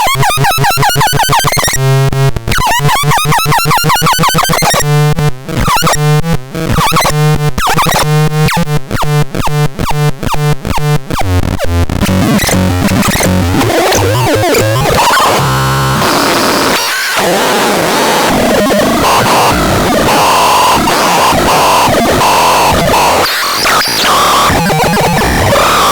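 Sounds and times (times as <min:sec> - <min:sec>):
noisy electronic cacophony: 0:00.0 - 0:25.9
synthesizer pitch sweeps: 0:12.0 - 0:16.8.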